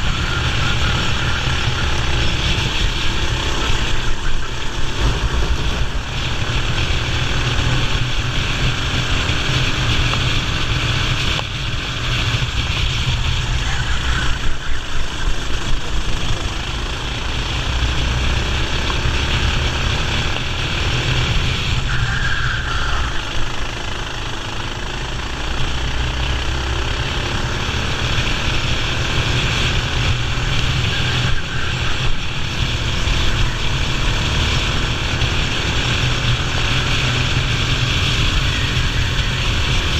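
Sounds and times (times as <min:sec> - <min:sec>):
wind noise on microphone: 0:00.0 - 0:23.7, 0:28.0 - 0:39.9
kart engine revving: 0:00.0 - 0:39.9.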